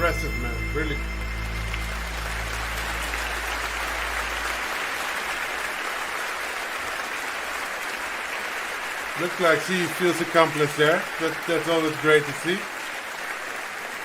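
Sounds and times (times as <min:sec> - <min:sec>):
low music note: 0:00.0 - 0:05.2
audience applauding: 0:00.0 - 0:14.0.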